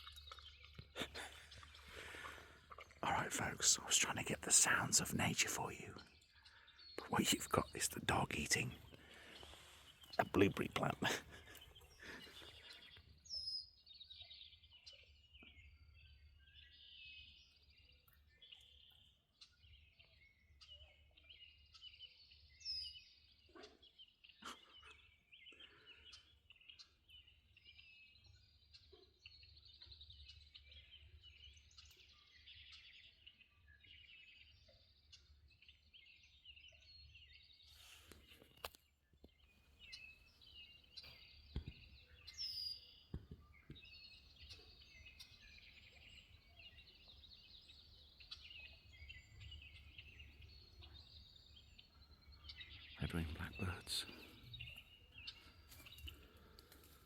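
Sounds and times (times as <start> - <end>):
frogs chirping: 0.0 - 12.6
birdsong: 0.0 - 57.0.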